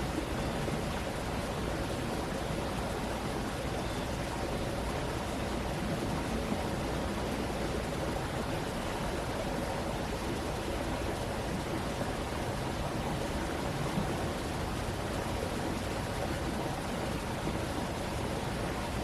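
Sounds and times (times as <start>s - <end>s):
stream running: 0.0s - 19.0s.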